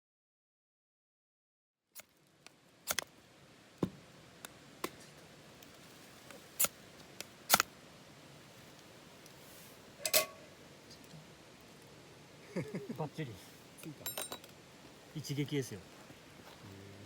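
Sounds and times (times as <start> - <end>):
brief metallic ring: 10.0 - 10.4.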